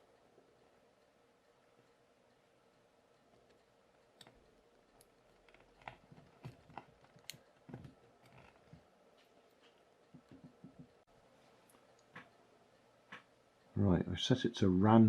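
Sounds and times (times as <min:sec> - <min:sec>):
small plastic parts clicking: 0:03.4 - 0:08.8.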